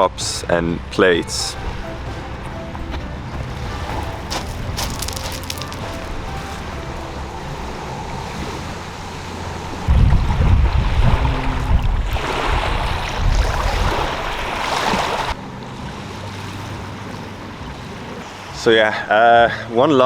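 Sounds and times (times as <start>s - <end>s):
outdoor rushing ambience: 0.8s - 18.7s
wind buffeting microphone: 1.5s - 16.0s.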